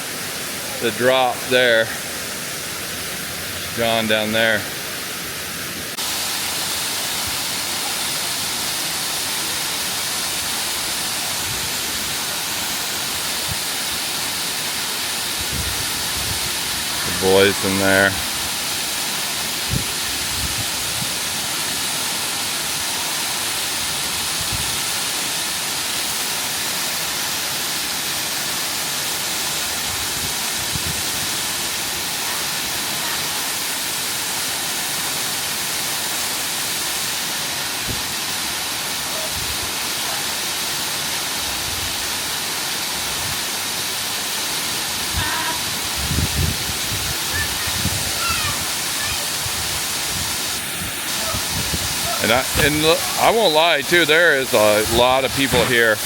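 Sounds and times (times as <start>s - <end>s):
waterfall pouring into a pool: 0.0s - 56.0s.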